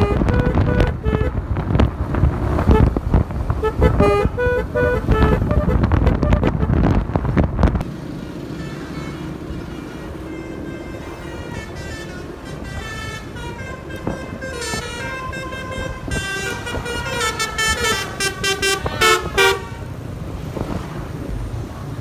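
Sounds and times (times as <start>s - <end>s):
musical horn playing a tune: 0.0s - 1.4s, 2.5s - 3.0s, 3.6s - 7.0s, 8.4s - 19.9s
engine and road noise: 0.0s - 22.0s
short loud horn toots: 3.6s - 6.9s, 8.6s - 19.9s.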